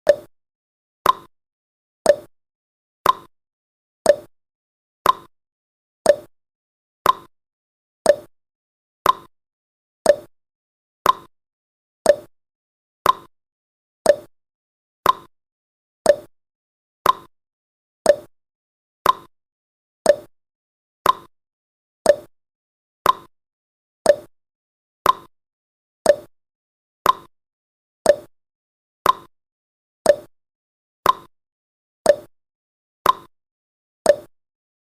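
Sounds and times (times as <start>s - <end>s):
timer ticking: 0.0s - 0.3s, 1.0s - 1.3s, 2.1s - 2.3s, 3.0s - 3.3s, 4.1s - 4.3s, 5.0s - 5.3s, 6.1s - 6.3s, 7.0s - 7.3s, 8.1s - 8.3s, 9.0s - 9.3s, 10.0s - 10.3s, 11.0s - 11.3s, 12.0s - 12.3s, 13.0s - 13.3s, 14.0s - 14.3s, 15.0s - 15.3s, 16.1s - 16.3s, 17.0s - 17.3s, 18.1s - 18.3s, 19.0s - 19.3s, 20.1s - 20.3s, 21.0s - 21.3s, 22.1s - 22.3s, 23.0s - 23.3s, 24.1s - 24.3s, 25.0s - 25.3s, 26.0s - 26.3s, 27.0s - 27.3s, 28.1s - 28.3s, 29.0s - 29.3s, 30.1s - 30.3s, 31.0s - 31.3s, 32.1s - 32.3s, 33.0s - 33.3s, 34.1s - 34.3s.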